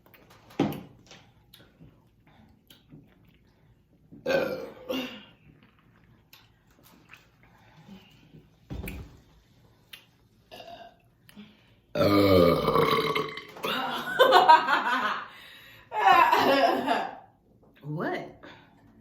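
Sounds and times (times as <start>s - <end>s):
person burping: 4.2s - 5.3s, 10.5s - 11.0s, 11.9s - 14.0s.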